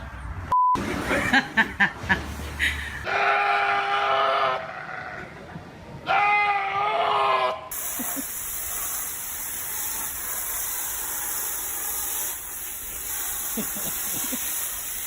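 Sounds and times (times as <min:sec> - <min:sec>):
steady hissing noise: 0:07.7 - 0:15.0.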